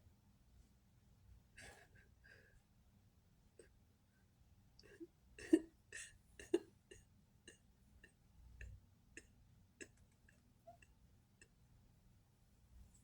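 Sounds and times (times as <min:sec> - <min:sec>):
faint ticks and clicks: 0:06.9 - 0:11.6.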